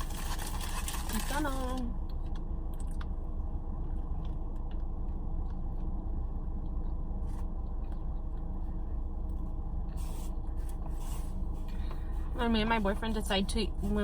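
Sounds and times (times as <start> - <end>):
steady low hum: 0.0 - 14.0
person chewing food: 2.0 - 12.3.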